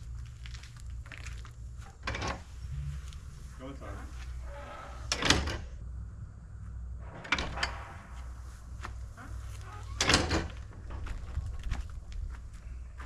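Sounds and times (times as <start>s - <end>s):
low hum: 0.0s - 13.0s.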